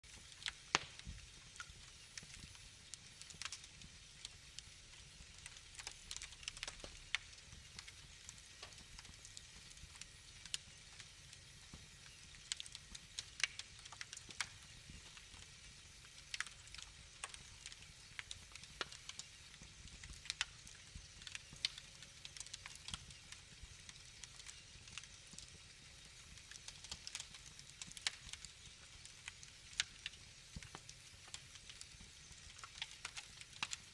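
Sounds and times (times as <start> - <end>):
wood fire crackling: 0.0 - 33.9.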